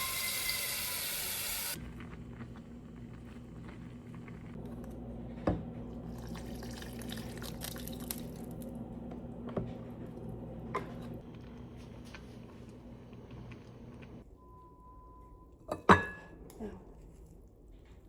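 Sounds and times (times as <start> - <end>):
water dripping or running: 0.0 - 1.8, 6.0 - 8.7.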